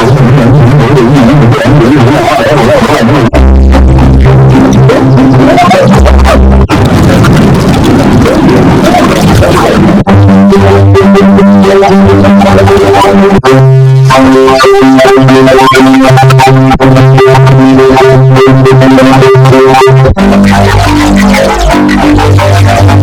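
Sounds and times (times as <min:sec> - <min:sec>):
distorted vocoded sneeze chords: 0:00.0 - 0:23.0.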